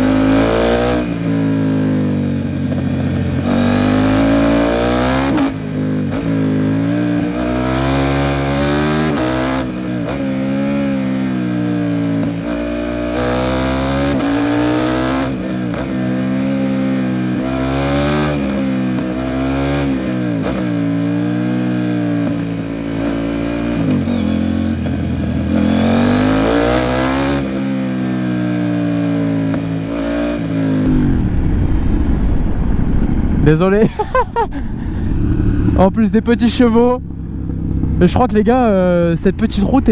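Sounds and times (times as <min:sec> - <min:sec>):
motorcycle engine accelerating: 0:00.0 - 0:39.9
low rumble: 0:30.9 - 0:39.9.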